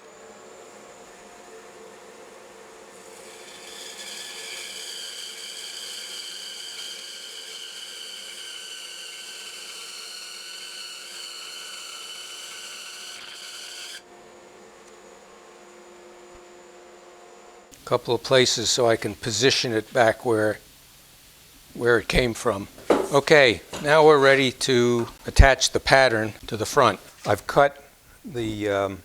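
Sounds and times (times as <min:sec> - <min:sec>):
bandsaw running: 0:02.5 - 0:14.1, 0:21.7 - 0:27.7
saw blade cutting wood: 0:02.8 - 0:14.0, 0:21.8 - 0:27.7.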